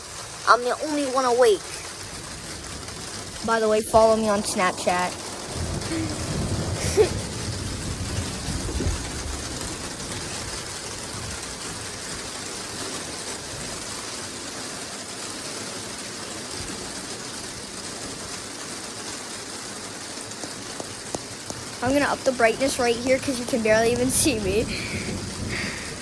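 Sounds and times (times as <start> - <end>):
heavy rain pouring: 0.0 - 26.0
low rumble: 3.3 - 12.0.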